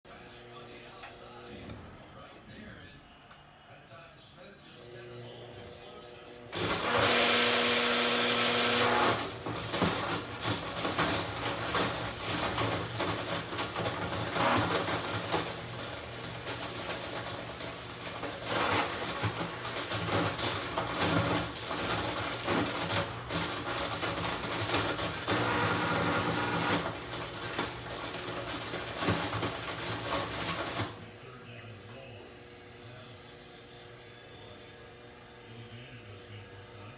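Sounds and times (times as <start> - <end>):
washing machine running: 5.4 - 31.2
rattling and knocking: 8.6 - 30.9.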